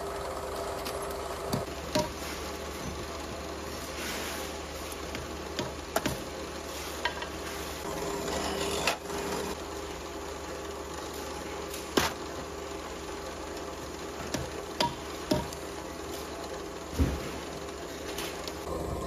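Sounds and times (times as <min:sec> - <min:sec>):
factory machinery hum: 0:00.0 - 0:19.0.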